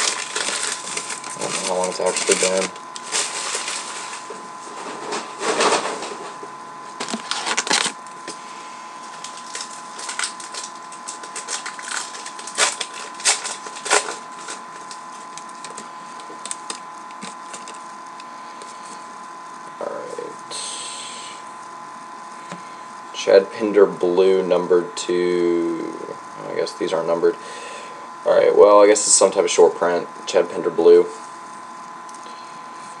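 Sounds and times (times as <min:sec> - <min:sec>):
card packs crinkling: 0:00.0 - 0:04.3, 0:06.9 - 0:08.4, 0:09.0 - 0:17.9
faint high-pitched hum: 0:05.1 - 0:33.0.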